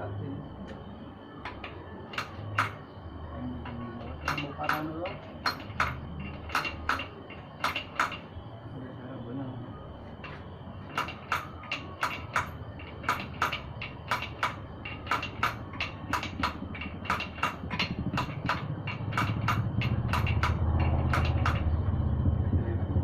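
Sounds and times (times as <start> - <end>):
sharp knocks: 1.4 - 2.9, 3.6 - 8.3, 10.2 - 21.8
low rumble: 17.6 - 23.0.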